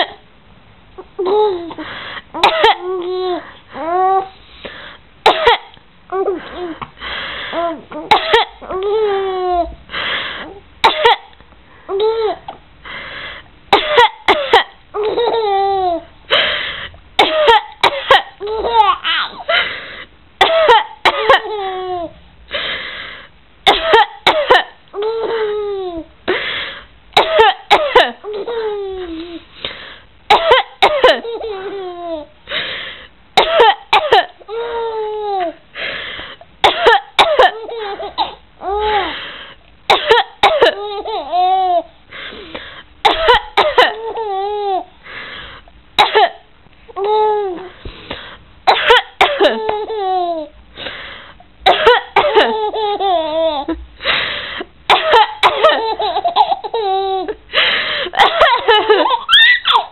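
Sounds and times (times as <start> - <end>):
baby giggling: 1.1 - 1.8, 2.4 - 4.3, 7.6 - 9.7, 13.8 - 16.1, 17.3 - 19.6, 20.5 - 22.2, 23.8 - 26.1, 27.4 - 29.4, 30.4 - 32.3, 37.2 - 39.1, 40.2 - 41.9, 43.1 - 44.9, 47.0 - 47.7, 49.2 - 50.5, 51.9 - 53.8, 54.9 - 57.4, 58.2 - 59.9
person coughing: 2.4 - 2.9, 5.3 - 6.8, 8.0 - 8.7, 10.8 - 11.4, 13.7 - 14.8, 17.2 - 18.4, 20.4 - 21.6, 23.7 - 25.5, 27.2 - 28.2, 30.3 - 31.3, 33.4 - 34.4, 36.6 - 39.1, 39.9 - 40.8, 42.6 - 44.1, 46.0 - 46.5, 48.7 - 49.8, 51.6 - 52.7, 54.9 - 56.6, 57.6 - 59.2.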